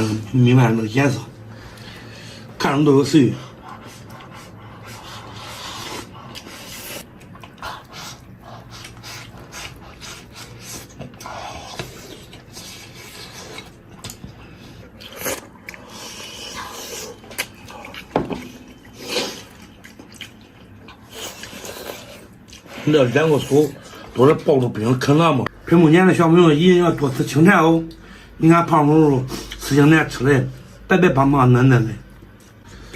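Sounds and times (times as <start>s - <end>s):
chewing and gnawing: 3.4s - 24.8s.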